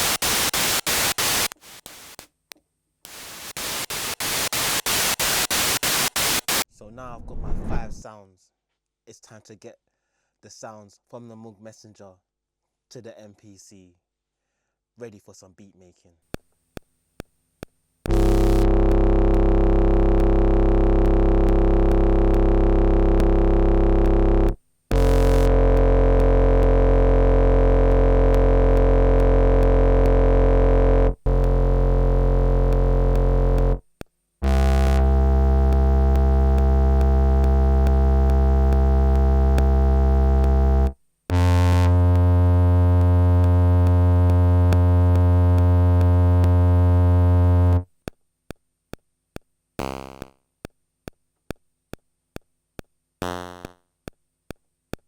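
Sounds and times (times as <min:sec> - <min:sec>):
synthesizer long held notes: 0:18.1 - 0:33.8, 0:34.4 - 0:47.8.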